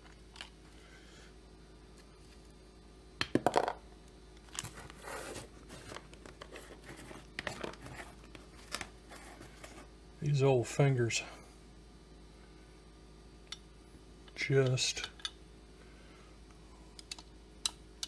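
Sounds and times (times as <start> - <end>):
clicking and rustling handling noise: 0.0 - 0.6, 4.4 - 9.9.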